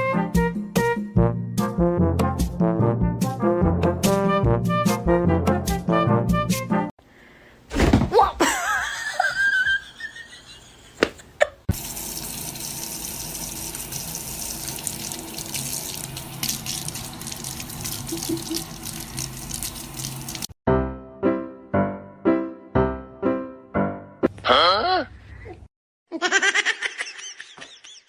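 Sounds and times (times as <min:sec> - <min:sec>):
running water rushing: 0:11.7 - 0:20.5.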